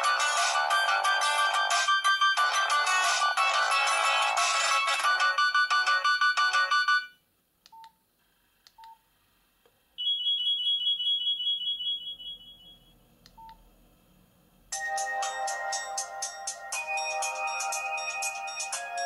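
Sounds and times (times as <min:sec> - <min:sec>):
mobile phone ringtone melody: 0:00.0 - 0:07.2, 0:14.8 - 0:19.0.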